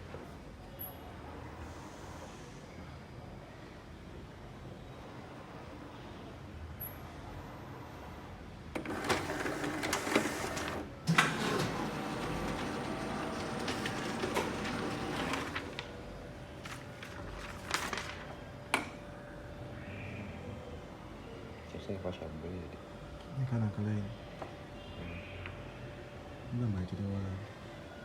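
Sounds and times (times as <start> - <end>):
office copier clattering: 8.8 - 19.0.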